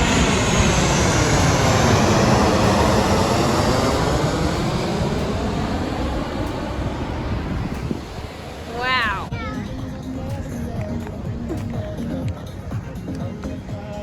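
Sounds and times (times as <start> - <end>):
ocean wave breaking: 0.0 - 9.3.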